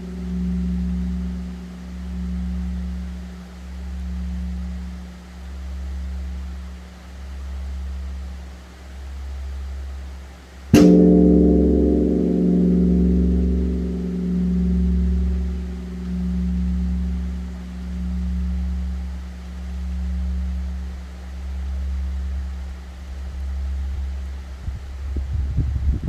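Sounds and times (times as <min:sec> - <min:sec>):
bell struck with wooden beam: 0:00.0 - 0:05.4, 0:10.8 - 0:22.5
temple bell humming: 0:00.0 - 0:07.9, 0:10.8 - 0:24.4.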